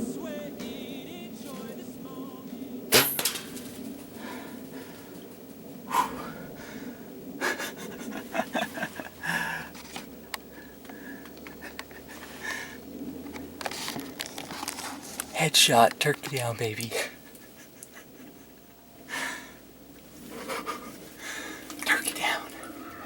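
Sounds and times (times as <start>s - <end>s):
rustling: 0.6s - 5.8s, 8.0s - 18.7s
person panting: 4.2s - 5.2s, 5.9s - 7.9s, 9.2s - 9.8s, 10.4s - 11.4s, 12.1s - 12.8s, 19.1s - 19.6s, 20.6s - 21.7s.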